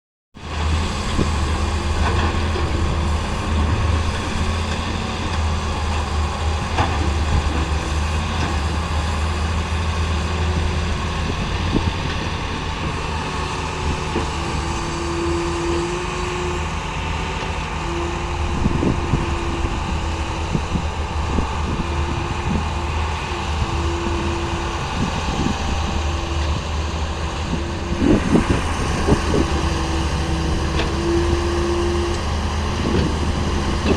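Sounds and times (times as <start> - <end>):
excavator diesel engine running: 0.4 - 33.9
whining tone: 17.8 - 33.9.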